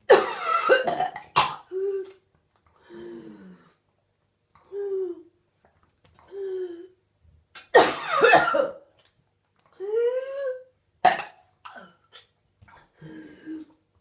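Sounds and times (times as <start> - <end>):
woman coughing harshly: 0.1 - 1.8, 7.7 - 8.8.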